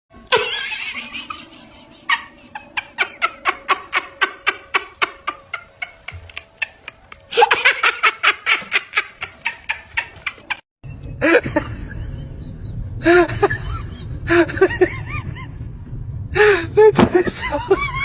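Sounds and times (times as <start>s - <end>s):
laughter in quick bursts: 0.3s - 10.6s.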